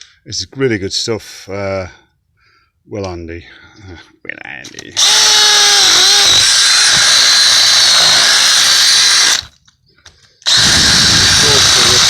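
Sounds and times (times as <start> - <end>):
hammer drill drilling into mortar: 5.0 - 9.6, 10.4 - 12.0.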